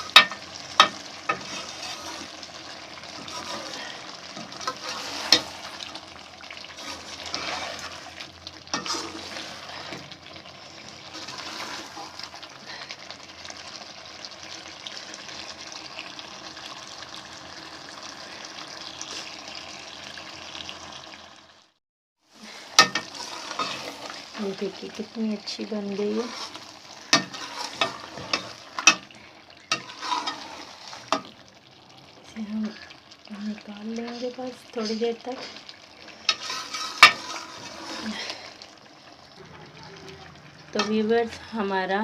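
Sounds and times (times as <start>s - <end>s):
food sizzling in a pan: 0.0s - 42.0s
spoon knocking against pan: 0.1s - 1.4s.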